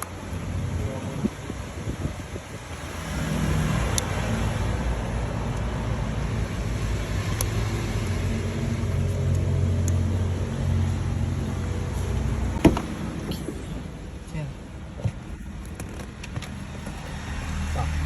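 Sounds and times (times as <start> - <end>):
car engine idling: 6.0 - 18.0.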